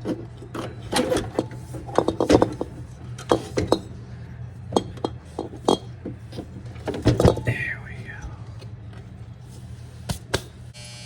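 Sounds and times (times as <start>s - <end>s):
metal clanks and knocks: 0.0s - 4.0s, 4.7s - 7.7s
steady low hum: 0.0s - 11.0s.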